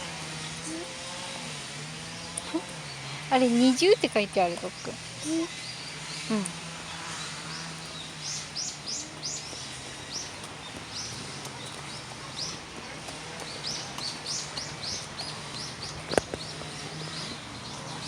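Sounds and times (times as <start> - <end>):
small birds chirping: 0.0 - 18.0.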